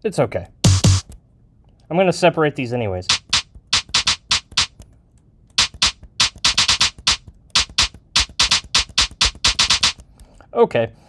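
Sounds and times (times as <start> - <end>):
electronic snare drum hits: 0.6 - 1.1, 3.1 - 4.8, 5.6 - 10.0.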